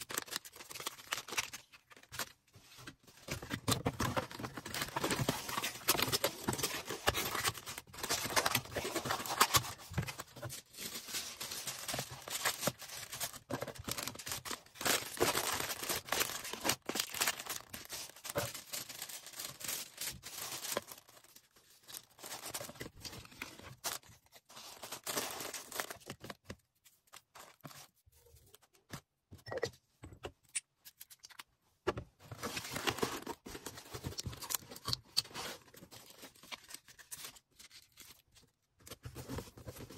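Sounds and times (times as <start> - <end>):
plastic packaging crinkling: 3.6 - 24.0.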